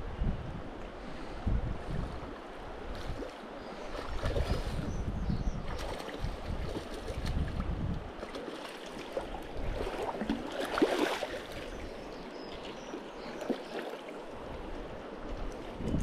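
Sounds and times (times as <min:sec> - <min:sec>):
wind buffeting microphone: 0:00.0 - 0:08.3, 0:14.4 - 0:16.0
river water splashing over stones: 0:05.6 - 0:07.5, 0:08.1 - 0:14.8.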